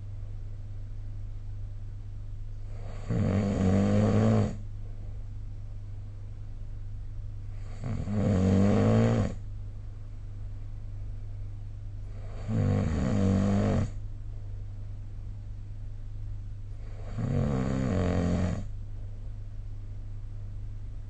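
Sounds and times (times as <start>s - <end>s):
steady low hum: 0.0s - 21.0s
person snoring: 2.7s - 4.6s, 7.6s - 9.4s, 12.1s - 14.0s, 16.8s - 18.7s.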